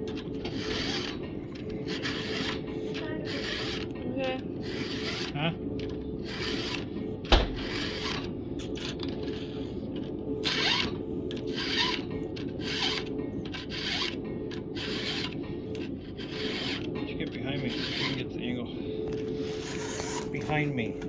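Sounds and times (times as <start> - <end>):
file rasping on chainsaw chain: 0.4 - 4.0, 4.6 - 5.4, 6.2 - 6.9, 7.5 - 8.3, 11.5 - 14.2, 14.8 - 18.6, 19.4 - 20.9
sharp knock: 7.3 - 7.6.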